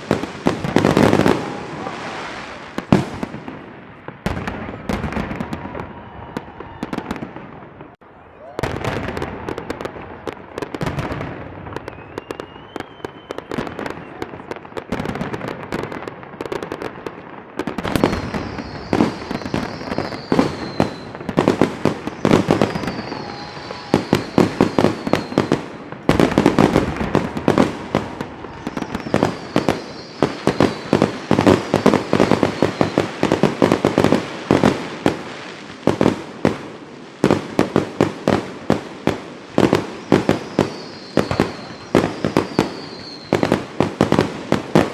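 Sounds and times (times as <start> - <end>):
falling firework whistles: 0.0 - 3.4, 4.4 - 10.0, 10.8 - 14.4, 17.7 - 34.8, 39.6 - 44.9
rising firework whistle: 0.0 - 3.6, 4.3 - 15.2, 17.7 - 34.8, 39.6 - 44.9
fireworks bangs: 0.0 - 44.9
fireworks popping and crackling: 0.0 - 44.9.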